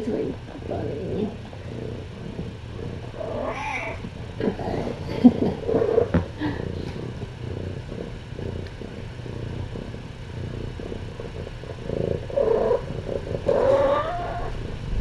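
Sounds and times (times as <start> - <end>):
cat purring: 0.0 - 15.0
cat meowing: 3.4 - 4.1.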